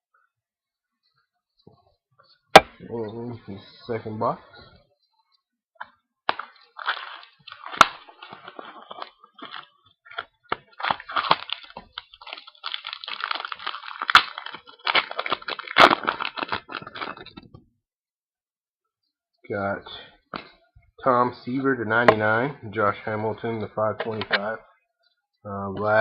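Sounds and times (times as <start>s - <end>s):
packaging crinkling and rustling: 6.3s - 17.5s.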